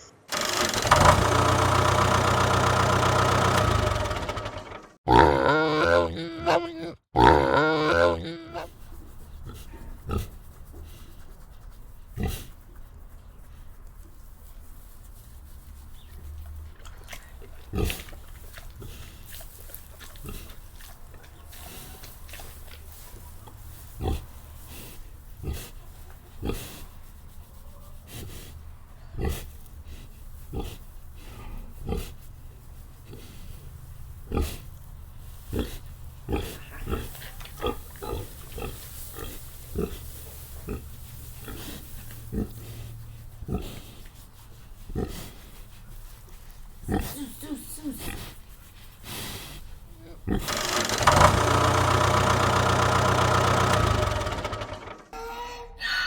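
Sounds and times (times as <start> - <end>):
pig grunting: 3.2 - 8.7, 35.5 - 40.0, 40.6 - 44.0, 46.8 - 48.4, 50.0 - 54.9.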